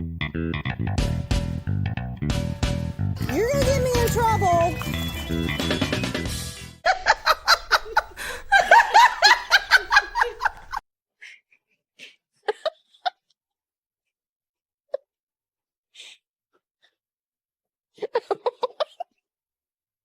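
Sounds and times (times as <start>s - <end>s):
person laughing hard: 6.9s - 10.8s.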